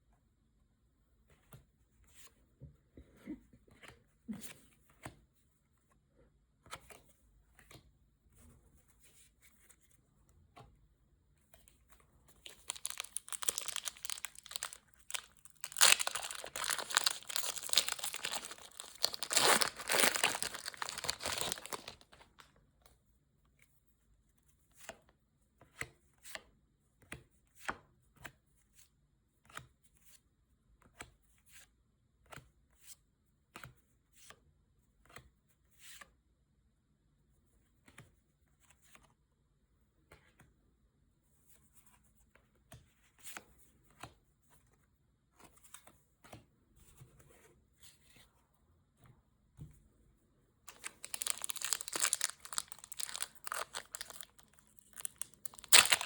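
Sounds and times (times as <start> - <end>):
packaging crinkling and ripping: 12.4 - 22.4, 50.7 - 56.0.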